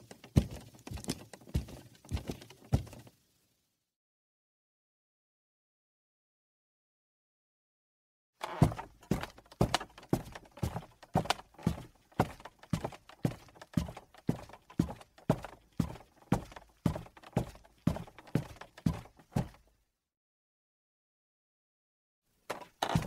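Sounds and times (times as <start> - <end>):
footsteps on wooden stairs: 0.0 - 3.1, 8.4 - 19.6, 22.5 - 23.0.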